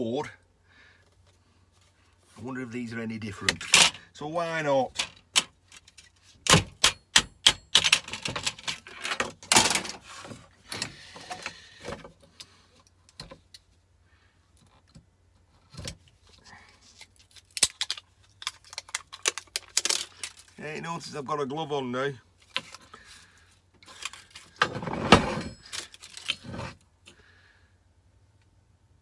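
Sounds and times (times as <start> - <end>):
tools and metal parts clattering: 3.4 - 4.0, 4.8 - 12.1, 17.8 - 20.6, 23.8 - 26.8.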